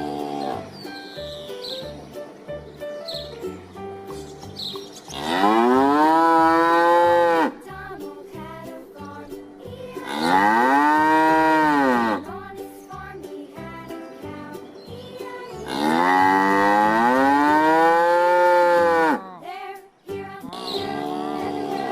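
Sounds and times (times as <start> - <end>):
cow mooing: 5.1 - 7.6, 10.0 - 12.2, 15.7 - 19.4.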